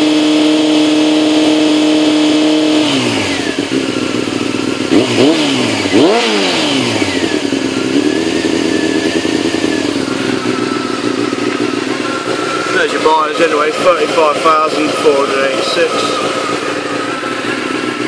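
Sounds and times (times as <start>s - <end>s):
motorcycle engine revving and idling: 0.0s - 18.0s.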